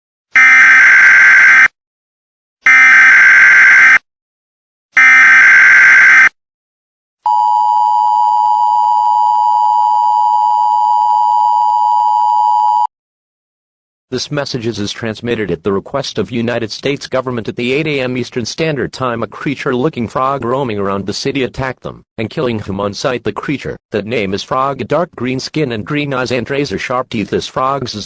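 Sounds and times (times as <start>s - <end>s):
two-tone alert signal: 5.0s - 6.3s.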